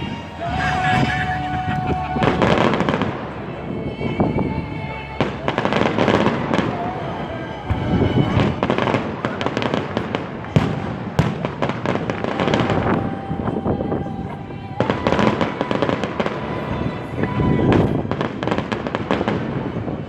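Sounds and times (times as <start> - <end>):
fireworks sharp bangs: 7.7 - 12.9.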